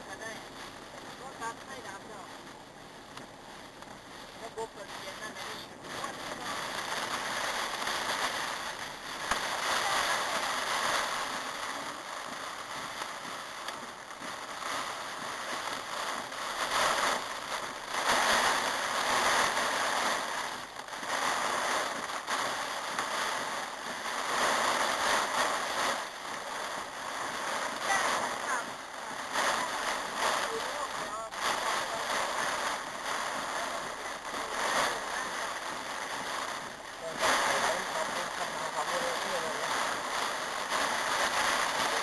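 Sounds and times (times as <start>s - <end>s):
heavy storm rain: 0.0s - 42.0s
wind gusts: 0.0s - 42.0s.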